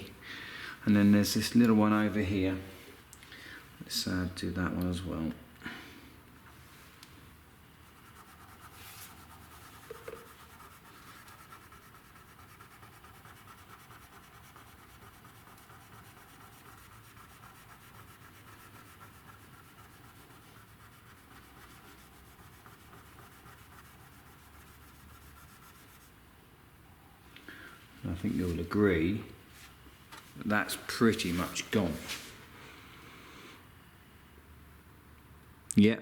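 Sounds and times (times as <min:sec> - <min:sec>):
applicator rubbing car paint: 0:07.8 - 0:26.2.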